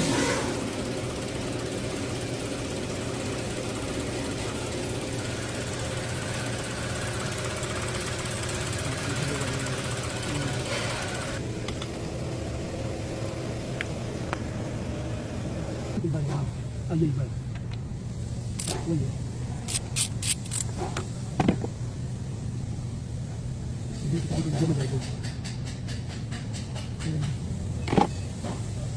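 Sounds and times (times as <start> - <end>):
car engine idling: 0.6 - 18.5.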